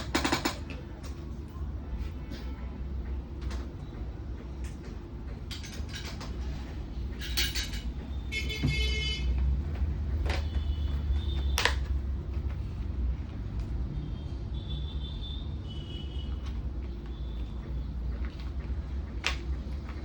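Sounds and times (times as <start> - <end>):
road traffic rumble: 0.0 - 20.0
vehicle horn toot: 8.3 - 9.4, 10.4 - 11.6, 14.1 - 16.4.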